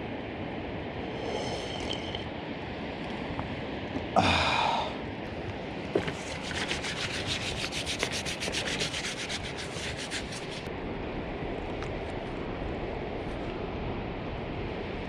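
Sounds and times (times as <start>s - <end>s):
rapid rubbing strokes: 6.0s - 10.7s.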